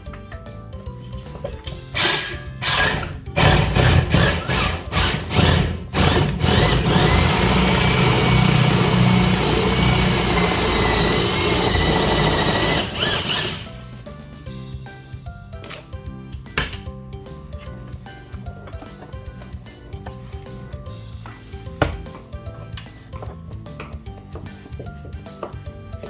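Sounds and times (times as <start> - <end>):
power drill running: 1.8 - 14.0.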